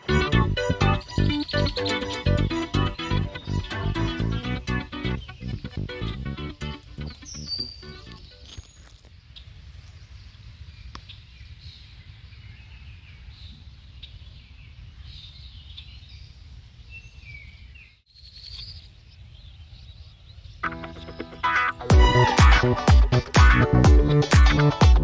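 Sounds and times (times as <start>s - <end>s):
low outdoor rumble: 0.0s - 8.2s
birds chirping: 0.0s - 9.0s, 9.9s - 25.0s.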